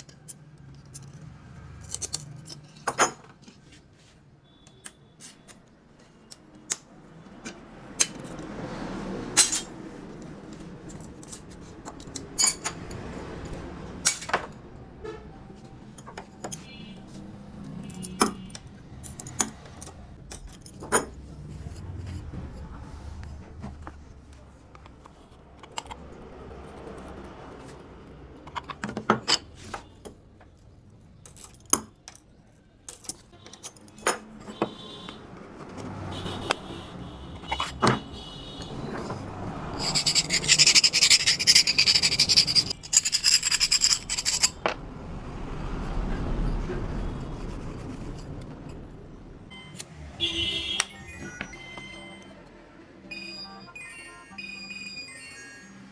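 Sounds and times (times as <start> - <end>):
scraping and rubbing: 38.8 - 44.8, 46.8 - 48.9.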